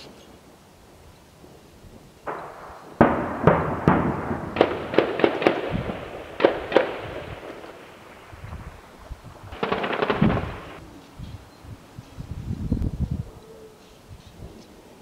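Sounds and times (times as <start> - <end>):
sharp echoing gunfire reports: 2.2 - 10.8.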